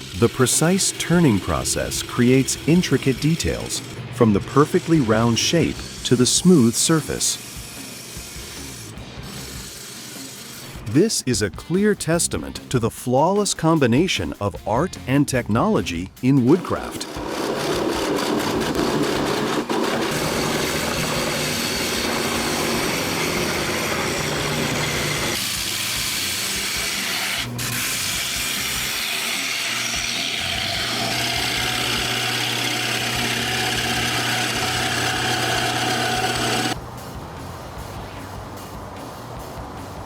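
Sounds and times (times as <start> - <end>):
woodworking machine cutting wood: 0.0 - 10.7, 16.6 - 36.8.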